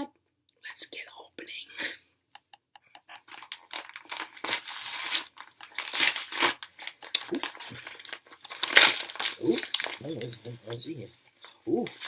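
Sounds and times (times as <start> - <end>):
packaging crinkling and tearing: 3.3 - 10.9.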